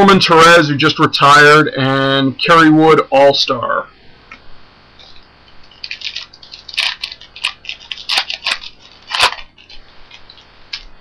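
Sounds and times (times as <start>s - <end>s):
card wrapper crinkling: 5.0s - 11.0s.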